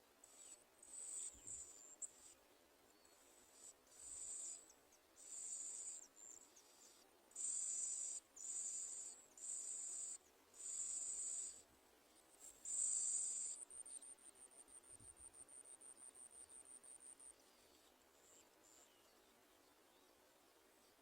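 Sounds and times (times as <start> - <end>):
nestlings begging calls: 7.4 - 11.6.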